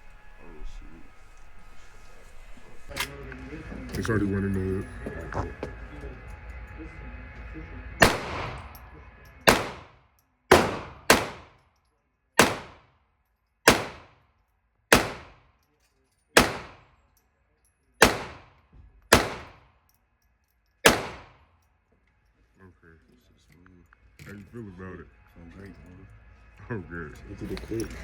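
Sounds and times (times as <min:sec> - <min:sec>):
gunshots with ringing echo: 0:08.0 - 0:08.9, 0:09.5 - 0:11.6, 0:12.4 - 0:12.9, 0:13.7 - 0:14.2, 0:14.9 - 0:15.4, 0:16.4 - 0:16.9, 0:18.0 - 0:19.6, 0:20.8 - 0:21.4.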